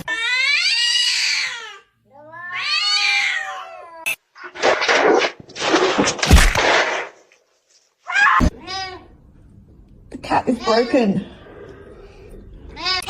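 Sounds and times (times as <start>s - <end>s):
cat yowling: 0.1s - 4.0s, 8.1s - 9.0s.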